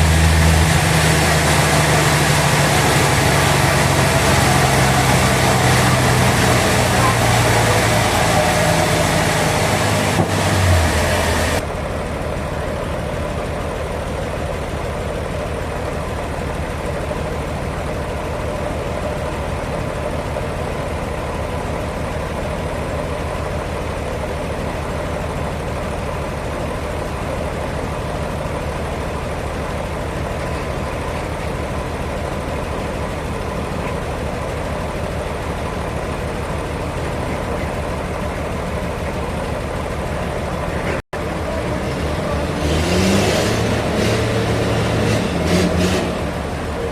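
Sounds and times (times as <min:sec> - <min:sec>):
harsh high machine noise: 0:00.0 - 0:11.6
sawmill machinery droning: 0:00.0 - 0:46.9.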